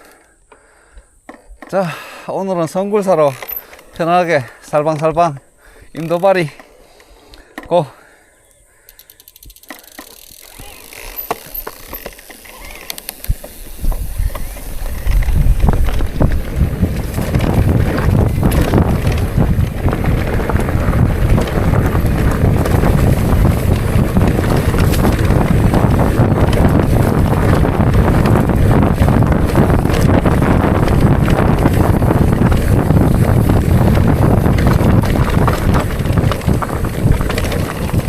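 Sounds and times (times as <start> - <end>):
bicycle clicks and rattles: 2.6 - 38.0
wind buffeting microphone: 13.2 - 38.0.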